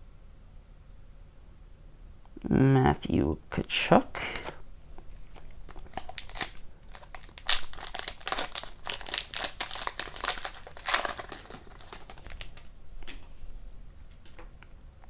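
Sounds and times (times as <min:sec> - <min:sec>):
foil wrapper crinkling: 0:04.4 - 0:13.2.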